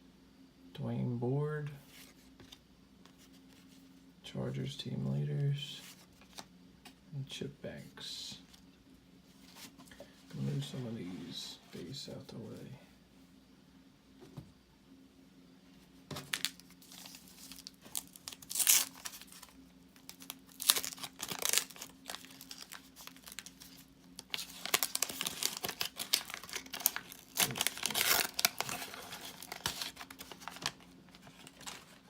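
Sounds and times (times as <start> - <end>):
wax paper crinkling: 16.1 - 32.0
paper tearing: 16.9 - 30.8.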